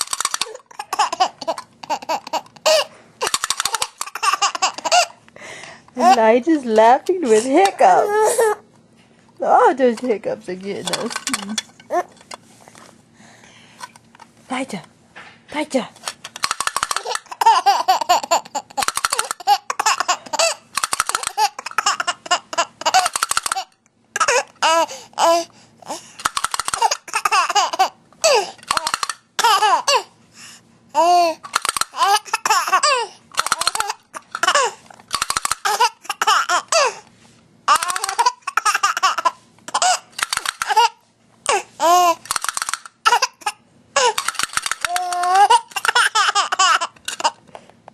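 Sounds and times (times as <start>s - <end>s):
baby laughing: 0.0s - 5.2s, 6.0s - 6.3s, 16.7s - 30.1s, 31.0s - 37.0s, 37.7s - 47.4s.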